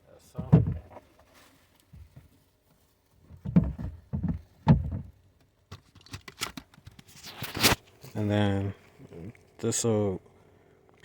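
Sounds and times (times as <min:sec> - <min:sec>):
plastic housing knocking against car: 0:03.4 - 0:05.2.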